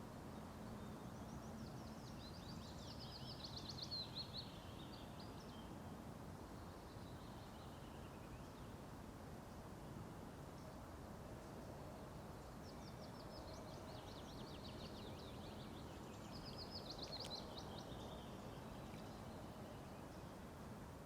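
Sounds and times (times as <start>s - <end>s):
faint background hiss: 0.0s - 21.0s
small bird chirping: 12.8s - 20.2s.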